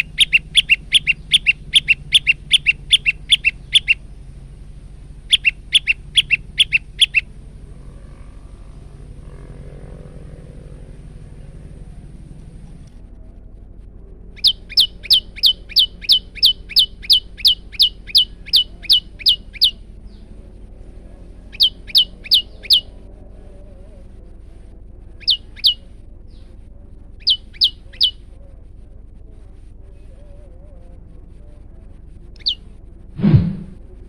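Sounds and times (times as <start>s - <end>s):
bird calling in piercing notes: 0.0s - 4.0s, 5.3s - 7.2s, 14.4s - 19.8s, 21.6s - 22.9s.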